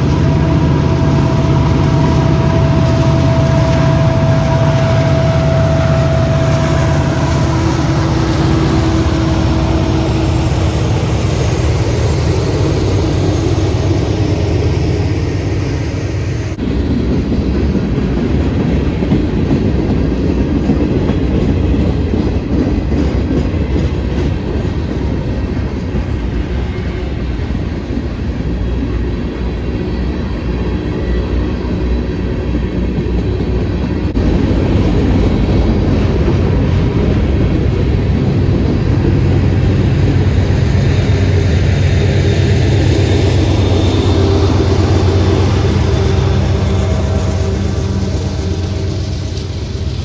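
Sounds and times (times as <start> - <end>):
train wheels clacking on rails: 0.0 - 50.0
steady low drone: 34.0 - 50.0.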